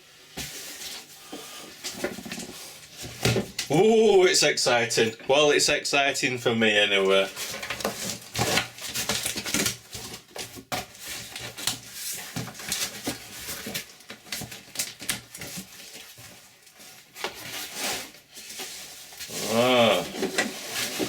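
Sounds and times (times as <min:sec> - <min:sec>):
cardboard parcel being opened: 0:07.1 - 0:21.0.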